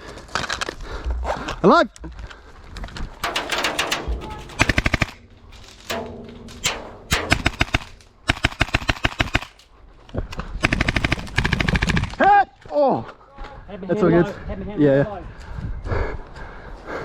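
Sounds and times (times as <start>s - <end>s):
airsoft rifle full-auto bursts: 7.6s - 9.6s, 10.6s - 12.0s.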